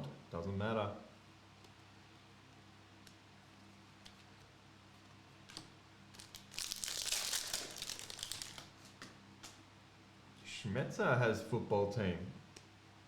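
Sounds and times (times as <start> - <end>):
card pack wrapper crinkling: 6.1 - 8.9.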